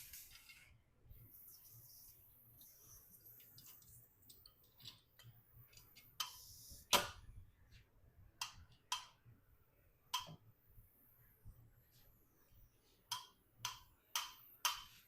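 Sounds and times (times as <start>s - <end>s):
small metallic clicks and taps: 10.1s - 10.4s, 13.1s - 15.0s.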